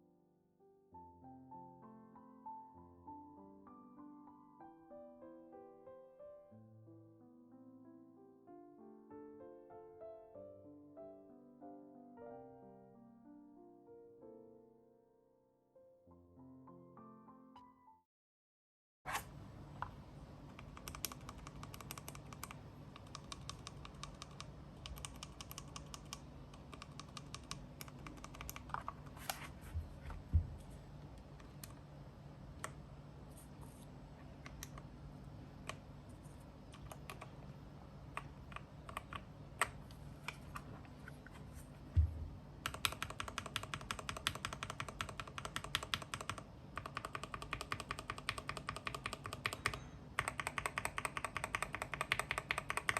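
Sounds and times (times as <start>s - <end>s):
mechanical keyboard typing: 20.5s - 29.2s, 36.7s - 37.4s, 38.1s - 40.4s, 42.6s - 52.9s.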